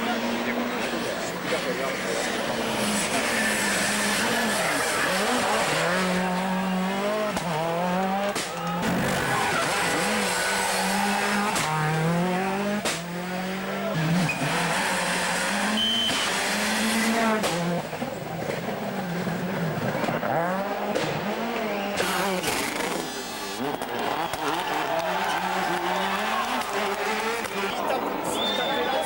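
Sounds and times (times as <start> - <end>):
rally car engine revving hard: 0.0 - 27.7
exhaust cracks: 8.6 - 10.4
tyre squeal: 8.8 - 10.1.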